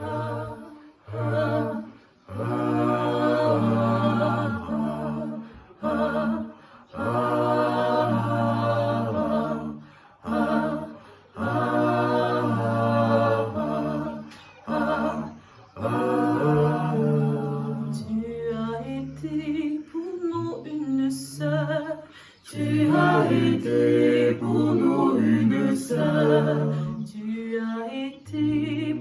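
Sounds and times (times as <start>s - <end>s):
a cappella group singing: 0.0s - 29.0s
singers breathing: 5.4s - 5.8s, 6.4s - 7.0s, 9.8s - 10.3s, 10.9s - 11.4s, 15.3s - 15.8s, 22.0s - 22.5s.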